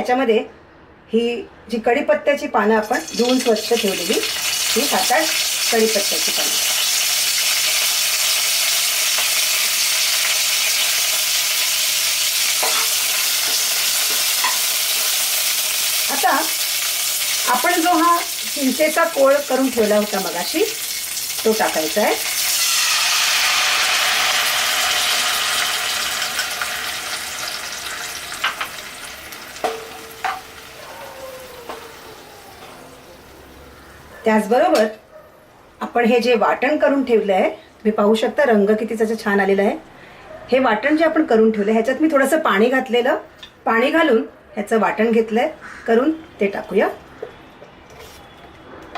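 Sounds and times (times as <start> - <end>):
leaves sizzling in hot oil: 2.8 - 30.9, 31.5 - 34.0
spoon clinking on pan: 29.6 - 30.6.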